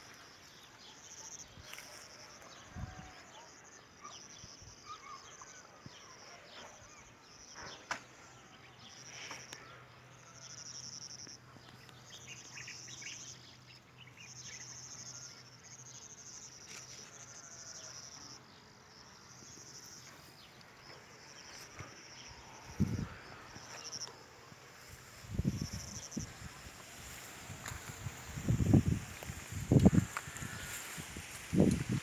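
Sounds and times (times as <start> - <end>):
crickets trilling: 6.9 - 32.0.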